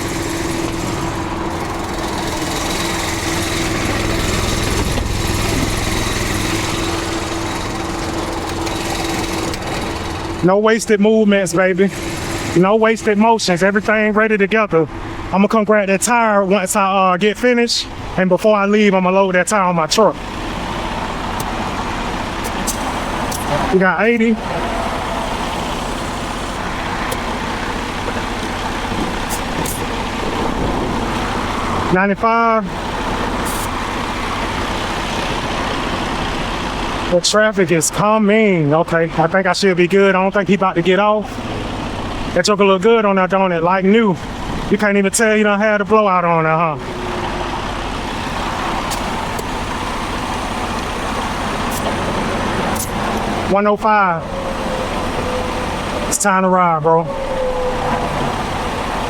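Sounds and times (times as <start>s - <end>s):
heavy traffic roar: 0.0s - 59.0s
trucks and cars passing: 0.0s - 59.0s.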